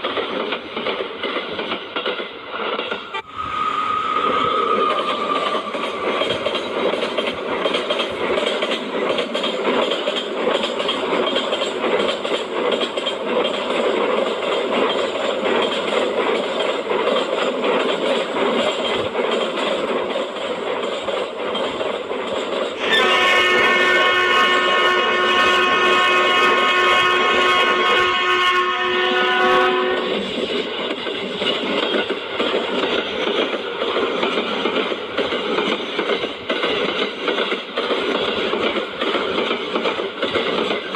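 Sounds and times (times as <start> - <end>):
train running: 0.0 - 40.9
train horn: 3.1 - 5.9, 22.8 - 30.2.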